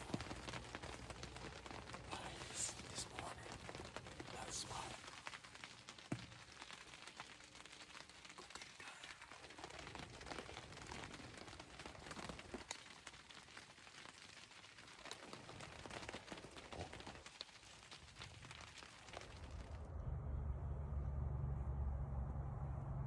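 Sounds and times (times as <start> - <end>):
faint background hiss: 0.0 - 13.9
soft crackles and ticks: 0.0 - 19.9.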